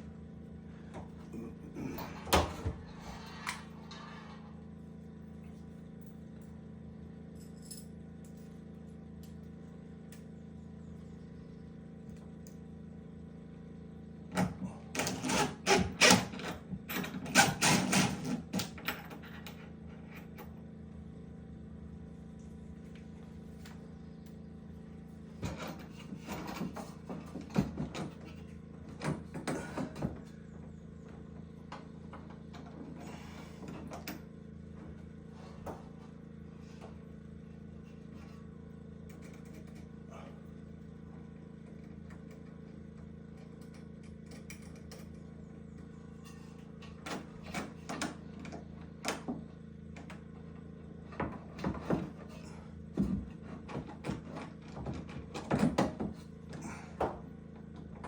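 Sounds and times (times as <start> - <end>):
low hum: 0.0 - 14.8.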